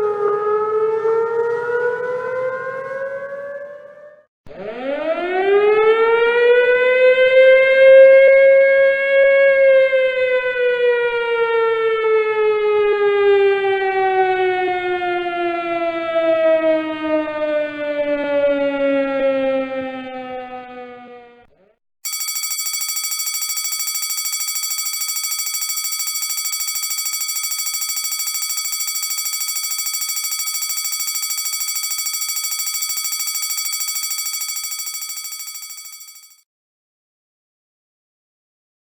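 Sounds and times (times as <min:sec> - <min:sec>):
pulsing ringing alarm: 0:22.0 - 0:36.4
siren wailing: 0:22.1 - 0:36.3.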